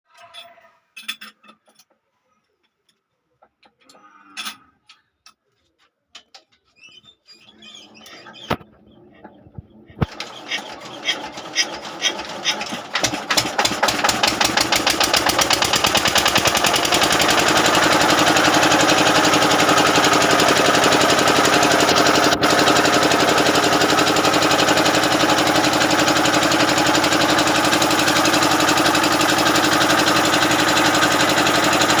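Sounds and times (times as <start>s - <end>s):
diesel generator engine starting: 7.4s - 32.0s.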